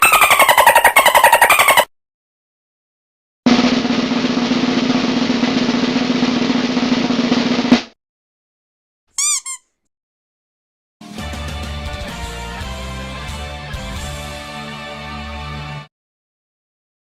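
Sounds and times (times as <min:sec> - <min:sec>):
rubber duck toy squeaking: 0:00.0 - 0:01.9, 0:09.2 - 0:09.8
drum roll: 0:03.5 - 0:08.0.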